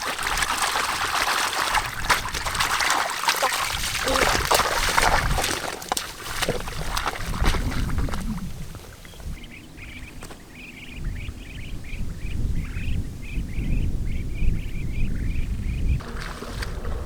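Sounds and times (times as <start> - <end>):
water splashing: 0.0 - 9.2, 16.0 - 17.0
wind rumble on microphone: 0.2 - 3.0, 3.6 - 17.0.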